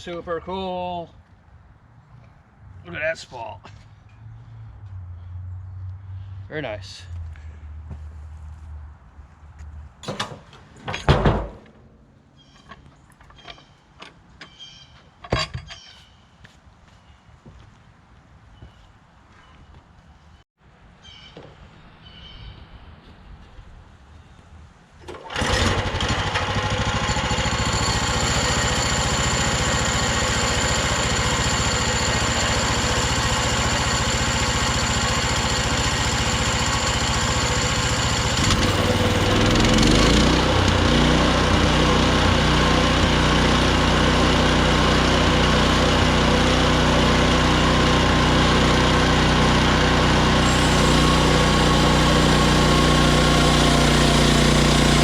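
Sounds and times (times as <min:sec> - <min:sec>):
sawmill gas engine running: 0:25.1 - 0:55.0.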